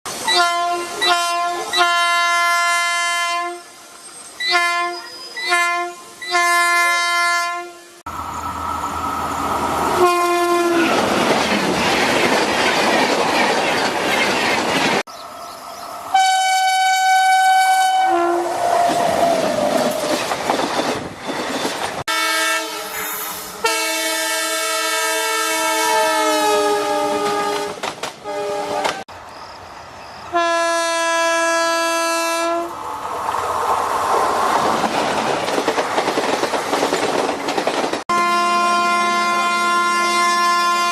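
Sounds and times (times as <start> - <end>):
passing train clatter: 0.1 - 40.9
locomotive horn blasts: 0.3 - 3.7, 4.4 - 8.1, 10.0 - 10.9, 16.1 - 18.6, 22.1 - 29.0, 30.3 - 32.7, 38.1 - 40.9
multi-note horn: 4.5 - 8.1, 10.0 - 10.9, 16.2 - 18.5, 22.1 - 29.0, 30.4 - 32.7, 38.1 - 40.9.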